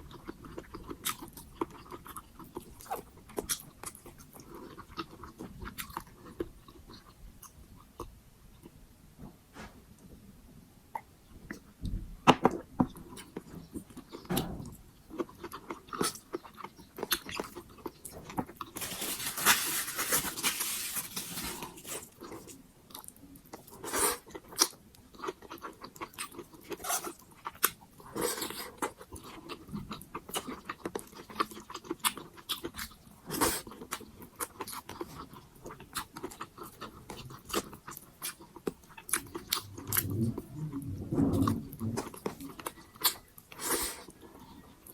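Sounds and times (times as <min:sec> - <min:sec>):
close chewing with mouth clicks: 0:00.0 - 0:08.8, 0:15.1 - 0:18.8, 0:21.6 - 0:40.8, 0:41.4 - 0:44.9.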